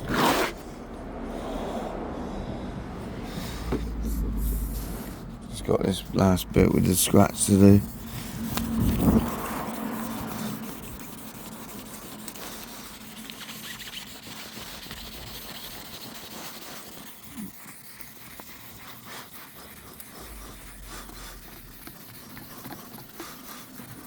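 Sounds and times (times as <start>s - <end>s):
polishing pad rubbing car paint: 0.0s - 24.0s.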